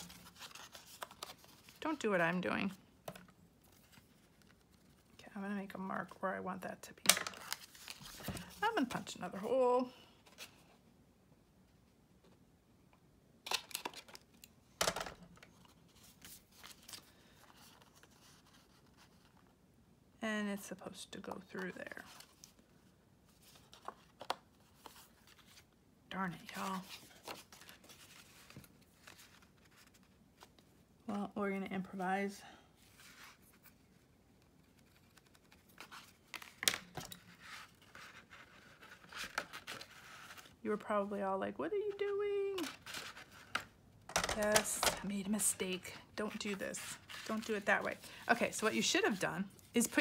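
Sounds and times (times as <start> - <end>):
paper handling: 0.0 - 1.8, 32.8 - 40.6, 46.3 - 50.0
paper rustling: 0.0 - 1.8, 7.2 - 9.6, 14.9 - 19.5, 26.3 - 30.7, 32.8 - 40.6, 41.9 - 50.0.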